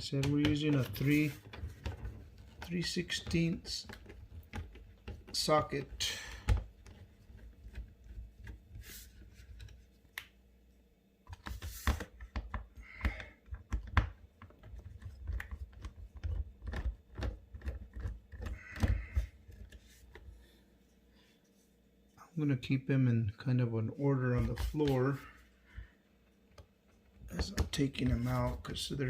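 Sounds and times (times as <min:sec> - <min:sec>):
scraping handling noises: 0:00.0 - 0:10.0.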